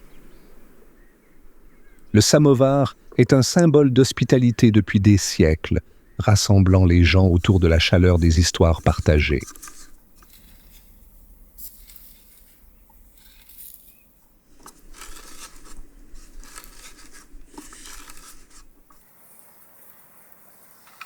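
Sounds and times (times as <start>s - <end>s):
soft rustling: 7.0s - 21.0s.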